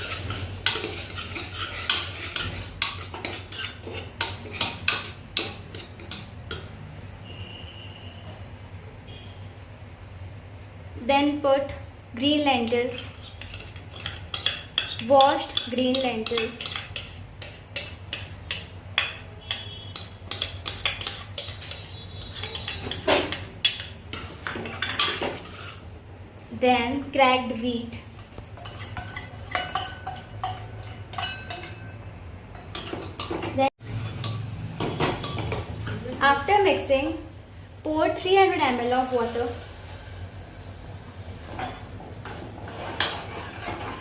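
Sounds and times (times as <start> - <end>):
metal spoon scraping a pot: 0.0 - 7.6, 12.6 - 26.0, 28.0 - 34.5, 41.5 - 44.0.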